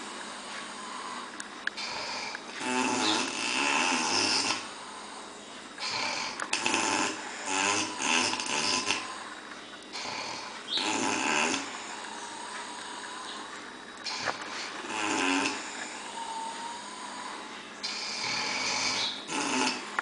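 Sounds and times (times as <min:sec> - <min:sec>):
quiet breaths: 0:00.0 - 0:03.2, 0:11.2 - 0:20.0
loud snoring: 0:00.7 - 0:09.3, 0:09.9 - 0:20.0.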